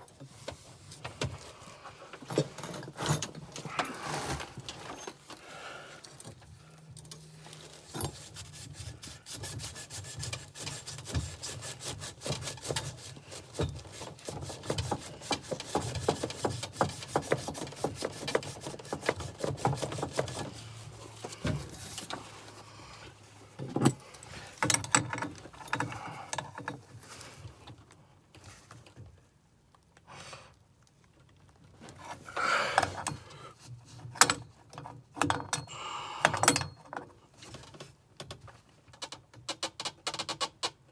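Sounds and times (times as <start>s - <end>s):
hand tool rasping on pipework: 7.7s - 22.5s.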